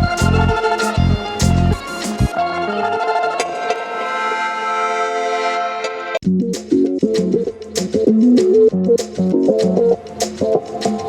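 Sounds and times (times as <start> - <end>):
background music with bass beat: 0.0 - 2.3, 6.2 - 11.0.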